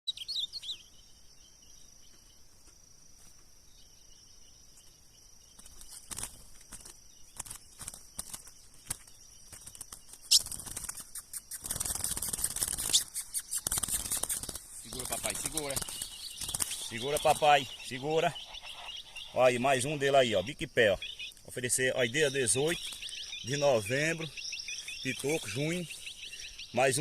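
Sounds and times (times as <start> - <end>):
bird chirp: 0.1 - 27.0
bird rustling and clicking: 5.6 - 17.0.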